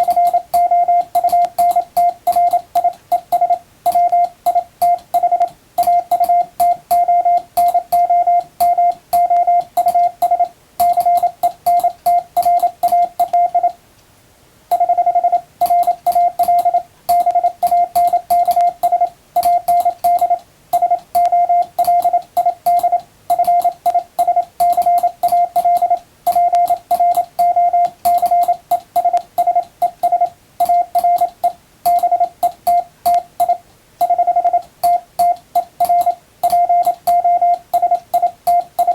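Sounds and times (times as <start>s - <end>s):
morse code beeps: 0.0s - 13.8s, 14.7s - 38.9s
faint keying clicks: 0.0s - 14.1s.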